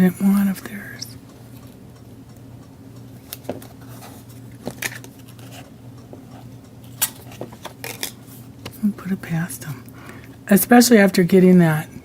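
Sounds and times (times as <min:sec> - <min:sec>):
steady low hum: 0:00.0 - 0:12.0
faint clicks and rustles: 0:03.0 - 0:08.8.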